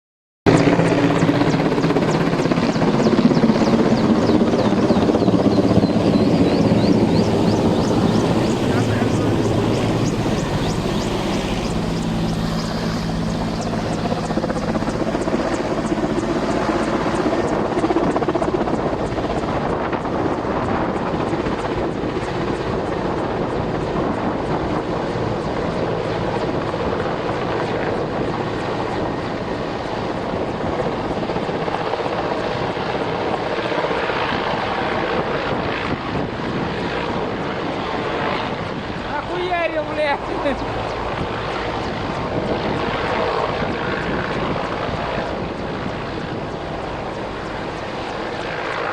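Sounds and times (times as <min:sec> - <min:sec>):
helicopter rotor and engine: 0:00.5 - 0:48.9
low hum: 0:04.9 - 0:17.8.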